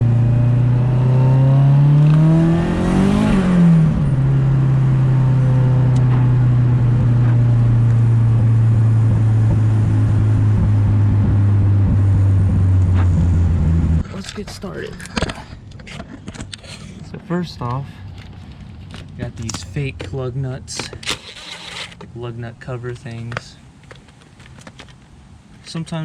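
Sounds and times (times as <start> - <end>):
car engine running and revving: 0.0 - 15.3.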